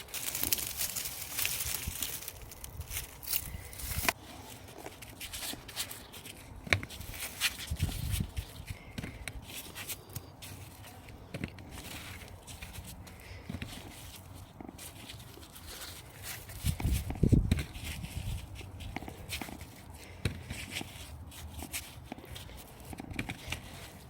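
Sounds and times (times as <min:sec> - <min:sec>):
rustling and scraping in soil: 0:00.0 - 0:24.0.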